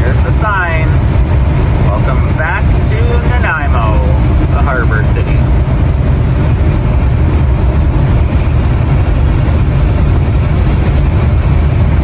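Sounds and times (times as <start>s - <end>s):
engine and road noise rumble: 0.0s - 12.0s.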